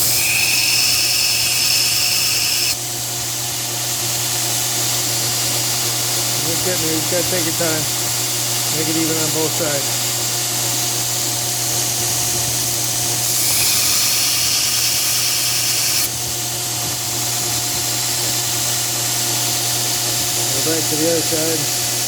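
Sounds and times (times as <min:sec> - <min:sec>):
belt grinder humming: 0:00.0 - 0:02.8, 0:11.9 - 0:16.2
blade grinding hiss: 0:00.0 - 0:02.8, 0:12.6 - 0:16.1.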